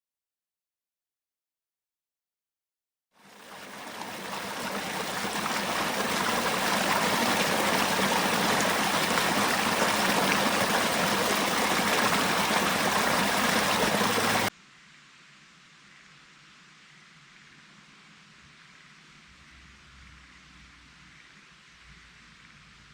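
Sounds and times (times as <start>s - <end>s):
flowing water rushing: 3.2s - 14.5s.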